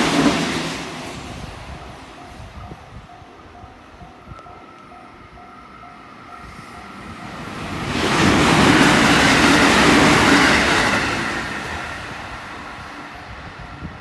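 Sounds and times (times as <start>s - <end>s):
train passing at speed: 0.0s - 14.0s
level-crossing alarm ringing: 2.2s - 7.8s.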